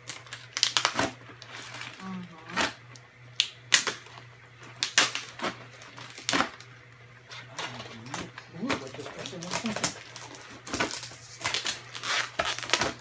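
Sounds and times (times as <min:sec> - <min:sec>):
cardboard and tape ripping: 0:00.0 - 0:02.8, 0:07.6 - 0:13.0.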